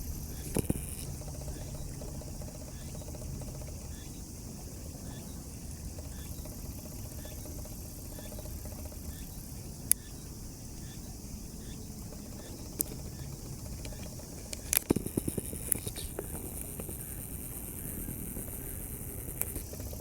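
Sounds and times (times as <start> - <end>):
insect-like hiss: 0.0 - 20.0
sharp click: 13.7 - 17.2.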